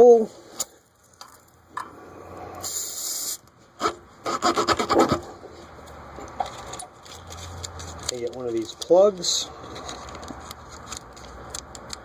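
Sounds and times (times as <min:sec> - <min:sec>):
brief high hiss: 0:02.2 - 0:03.4.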